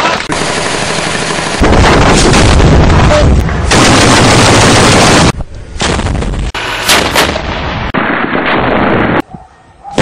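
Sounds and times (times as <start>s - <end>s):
gunfire and heavy weapons fire: 0.0s - 9.2s
sharp gunshots: 1.4s - 9.2s.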